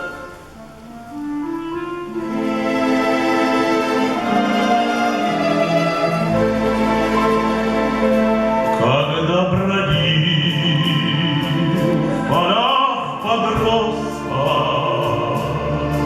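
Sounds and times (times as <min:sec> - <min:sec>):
wavering melodic line: 0:00.0 - 0:09.0
orchestral strings with light beat: 0:00.0 - 0:16.0.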